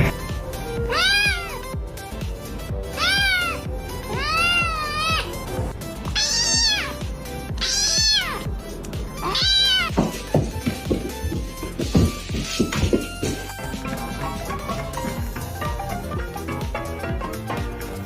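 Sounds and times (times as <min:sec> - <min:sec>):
background music with a beat: 0:00.0 - 0:18.0
cat meowing: 0:00.8 - 0:01.7, 0:02.8 - 0:05.4, 0:06.0 - 0:08.5, 0:09.1 - 0:10.2.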